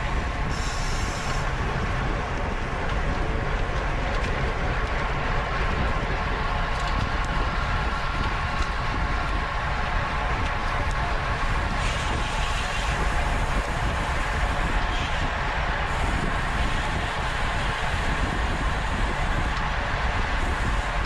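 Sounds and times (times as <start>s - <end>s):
faint steady whine: 0.0s - 21.0s
wind rumbling on microphone: 0.0s - 21.0s.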